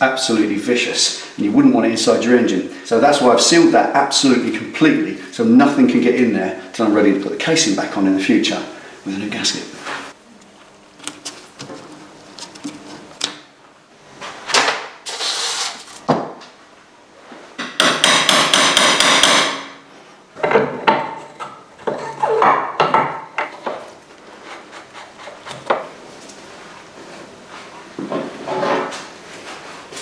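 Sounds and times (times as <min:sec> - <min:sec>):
rapid tool strokes: 0:24.3 - 0:25.7.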